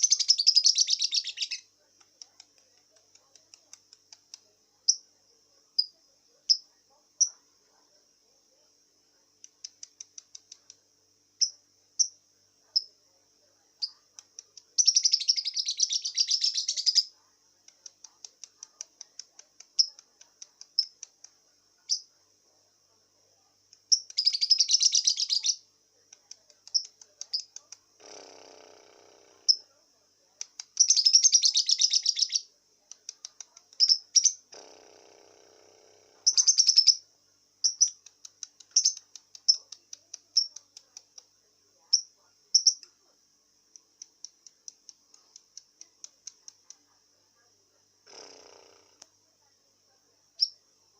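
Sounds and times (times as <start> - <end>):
young bird chirping and chattering: 0.0 - 1.7, 14.8 - 17.1, 23.9 - 25.6, 30.5 - 32.5, 33.8 - 34.6, 36.3 - 37.0, 37.6 - 40.6.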